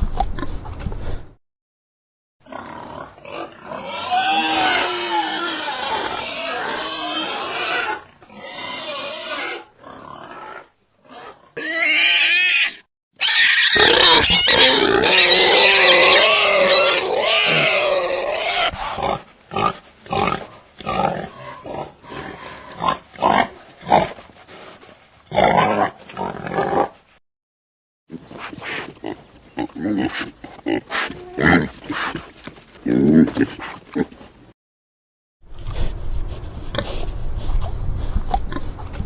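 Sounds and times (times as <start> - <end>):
wild boar squealing: 2.5 - 24.0
wild boar grunting: 28.1 - 34.3.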